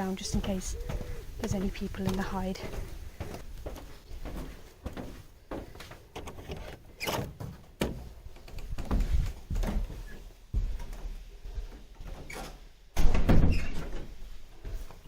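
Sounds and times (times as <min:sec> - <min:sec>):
wooden door being opened: 0:06.1 - 0:10.2, 0:12.0 - 0:14.2.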